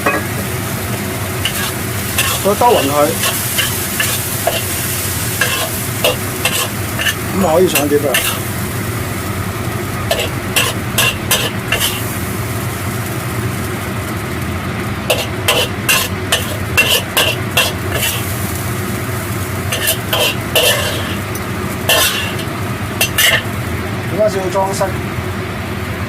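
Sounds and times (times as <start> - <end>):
metal spatula scraping a wok: 1.4 - 8.5, 10.1 - 12.2, 15.1 - 18.5, 19.7 - 23.6.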